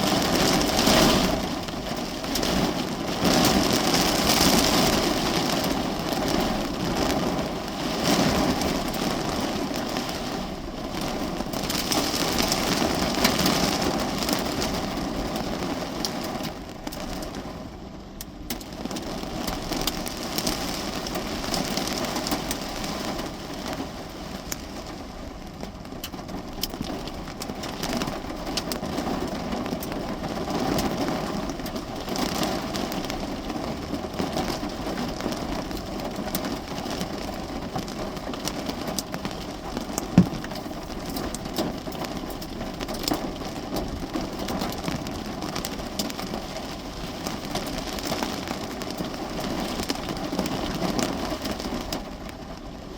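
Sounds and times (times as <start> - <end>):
rain on a car roof: 0.0 - 52.9
sharp knock: 40.2 - 40.4.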